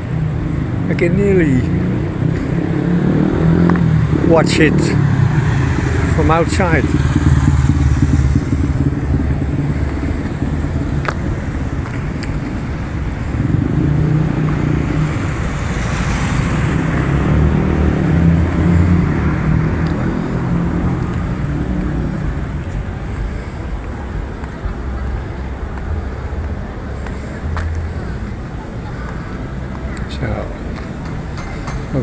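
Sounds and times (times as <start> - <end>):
cars driving by: 0.0 - 32.0
motorcycles passing: 0.0 - 32.0.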